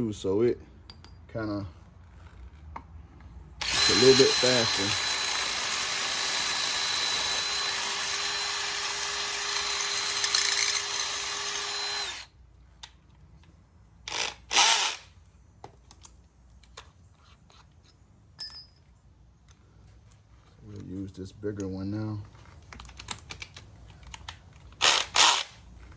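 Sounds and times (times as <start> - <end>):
electric drill boring metal: 3.6 - 12.3.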